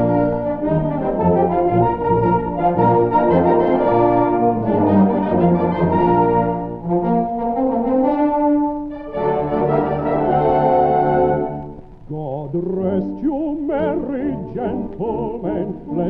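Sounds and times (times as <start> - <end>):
muffled old dance band brass chords: 0.0 - 12.1.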